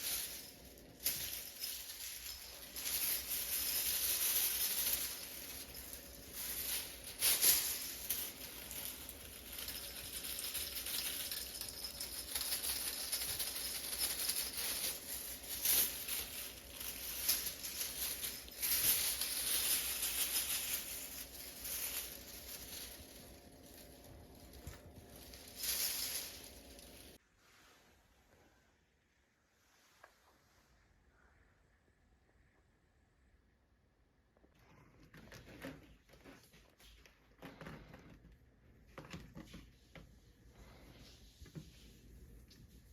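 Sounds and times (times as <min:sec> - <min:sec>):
cats rustling and scratching: 0:00.0 - 0:27.2, 0:34.5 - 0:42.9
cats scuffling: 0:00.0 - 0:27.2.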